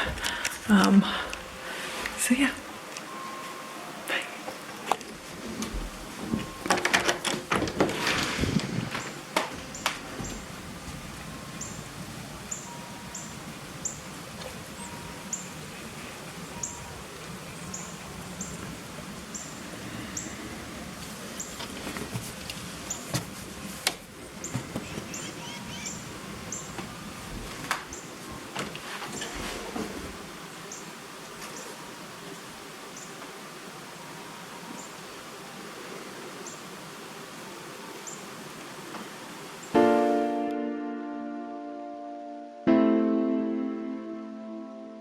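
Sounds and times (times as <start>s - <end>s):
rustling and clicks: 4.4s - 11.1s
small bird chirping: 11.6s - 11.9s, 12.5s - 14.1s, 14.8s - 15.7s, 16.5s - 18.6s.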